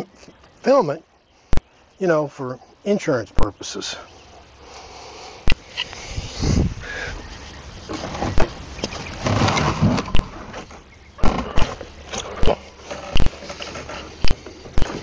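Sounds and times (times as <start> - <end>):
scraping and shuffling: 5.8 - 15.0
wooden knocks and bumps: 7.9 - 15.0.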